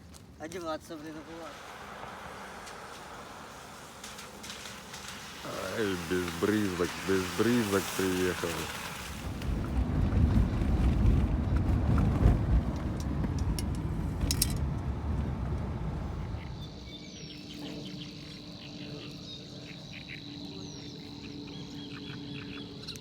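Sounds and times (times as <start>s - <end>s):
loud low rumbling: 9.2s - 16.8s
bird chirps: 16.2s - 23.0s
high-pitched insect trill: 16.5s - 23.0s.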